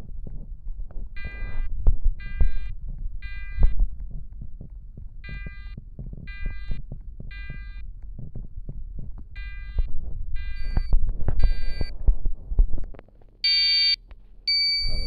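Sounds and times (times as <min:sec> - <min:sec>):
low thumps and rumble: 0:00.0 - 0:13.4.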